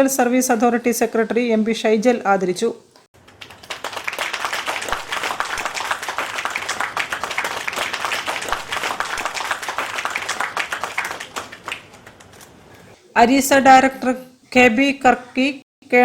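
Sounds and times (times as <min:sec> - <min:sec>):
audience applauding: 0:03.2 - 0:12.4.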